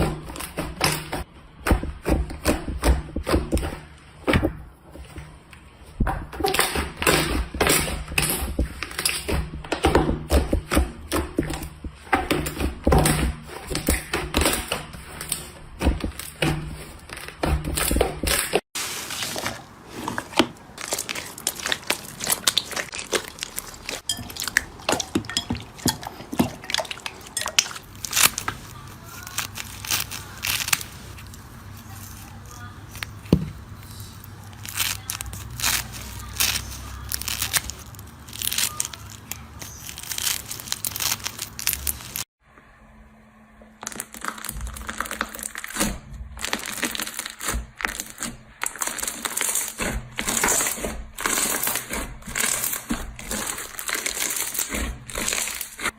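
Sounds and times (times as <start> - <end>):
slime popping and crackling: 20.7 - 42.3, 43.8 - 55.9.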